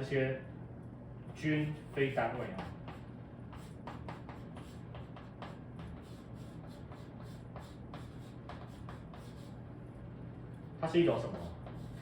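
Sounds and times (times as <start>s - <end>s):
low steady hum: 0.0s - 12.0s
pen scratching on paper: 1.8s - 9.6s.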